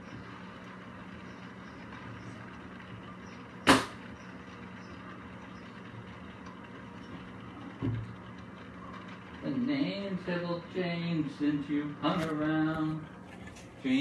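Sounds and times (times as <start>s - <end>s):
electrical hum: 0.0s - 14.0s
sharp knock: 3.6s - 4.0s.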